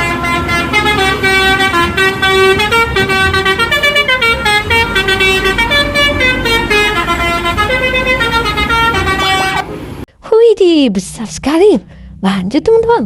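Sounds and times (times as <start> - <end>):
multi-tone bus horn tune: 0.0 - 10.0.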